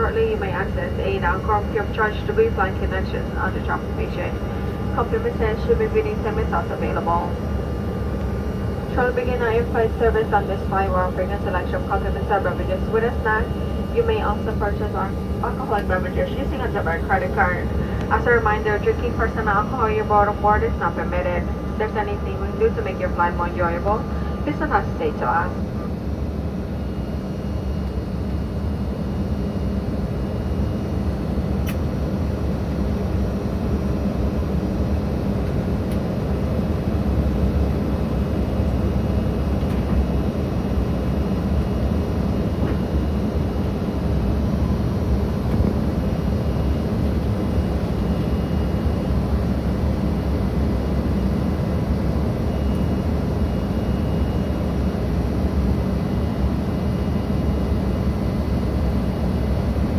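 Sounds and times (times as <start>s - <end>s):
faint steady tones: 0.0s - 26.1s
jet engine roar in cabin: 0.0s - 59.9s.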